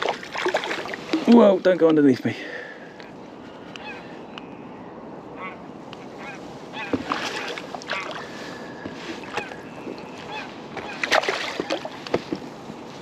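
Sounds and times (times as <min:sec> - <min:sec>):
fish splashing in water: 0:00.0 - 0:01.2, 0:07.0 - 0:08.6, 0:10.3 - 0:12.2.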